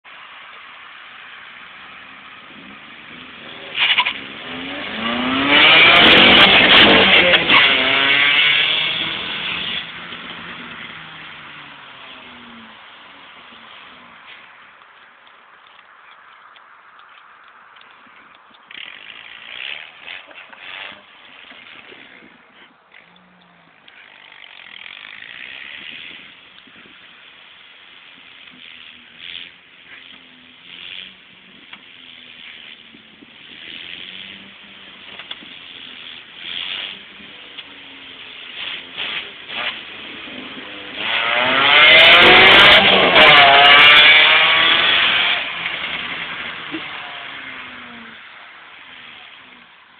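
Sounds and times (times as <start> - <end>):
car engine revving with exhaust leak: 0.9 - 14.5, 23.9 - 49.9
faint clicks: 14.3 - 25.9.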